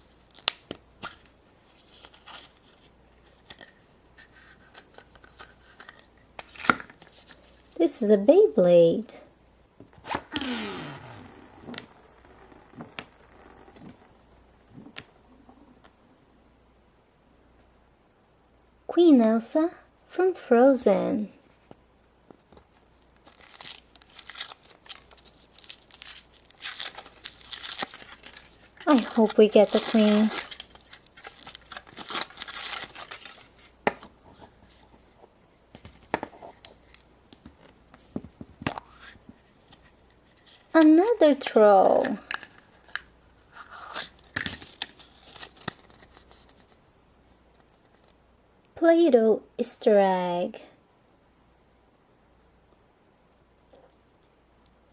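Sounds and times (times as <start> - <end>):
wrapper rustling and tearing: 10.0 - 15.2, 22.7 - 33.8, 41.5 - 46.8.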